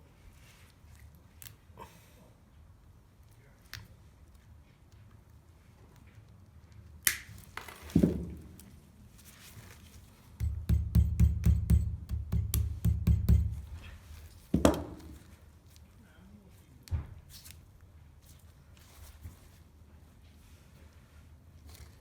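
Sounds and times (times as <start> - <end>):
dull thuds: 10.4 - 15.2.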